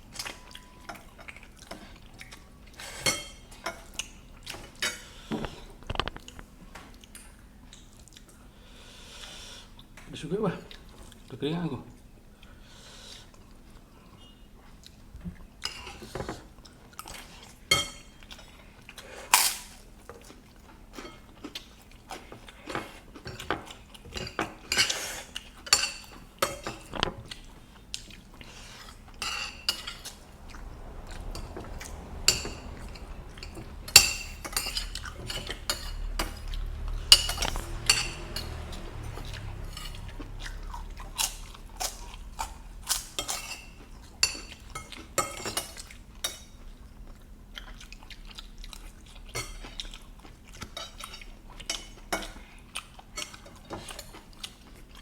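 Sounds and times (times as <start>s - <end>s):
chewing: 0.0s - 10.0s, 12.0s - 55.0s
cutlery clinking on plate: 29.2s - 30.2s, 32.3s - 40.1s
low rumble: 29.7s - 35.6s.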